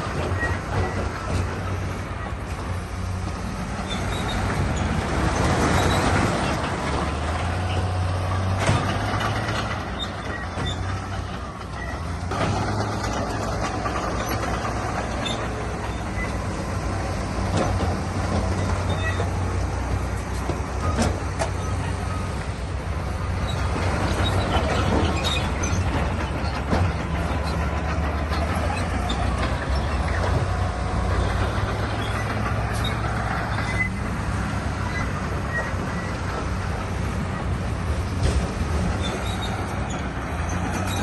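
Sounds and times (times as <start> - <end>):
heavy diesel machinery running: 0.0 - 41.0
short squeals: 3.8 - 6.6, 7.5 - 12.2, 14.2 - 16.5, 18.4 - 19.5, 31.2 - 34.1, 39.0 - 41.0.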